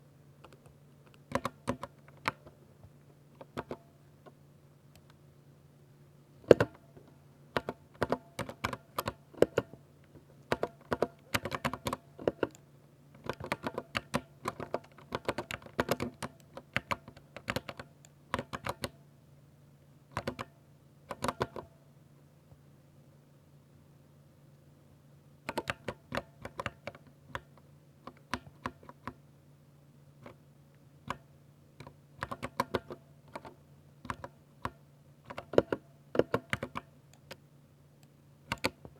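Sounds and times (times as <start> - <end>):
faint low hum: 0.0 - 38.9
mechanical keyboard typing: 0.4 - 2.5, 3.4 - 3.8, 7.6 - 9.7, 10.5 - 12.6, 13.2 - 19.0, 20.1 - 20.5, 21.1 - 21.7, 25.5 - 27.5, 31.1 - 37.4, 38.5 - 38.9.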